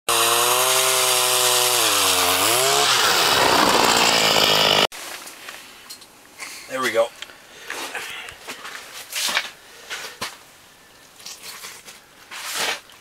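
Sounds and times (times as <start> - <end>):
small engine running fast: 0.1 - 4.9.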